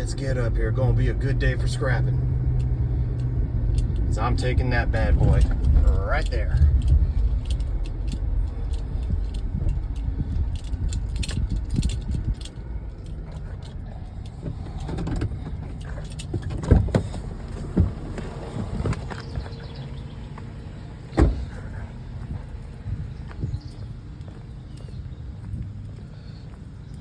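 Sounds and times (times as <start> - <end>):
low rumble: 0.0 - 26.3
scrap metal rattling and clinking: 5.0 - 17.8.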